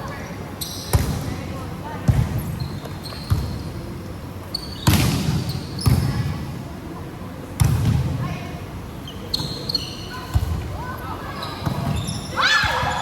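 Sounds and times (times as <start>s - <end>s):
sneaker squeaks on floor: 0.6s - 1.1s, 2.4s - 3.8s, 4.5s - 6.1s, 9.0s - 10.5s, 11.3s - 13.0s.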